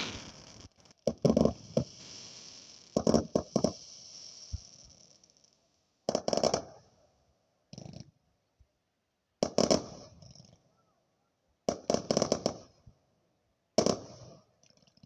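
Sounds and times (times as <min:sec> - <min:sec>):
rifle gunshots: 0:00.0 - 0:00.5.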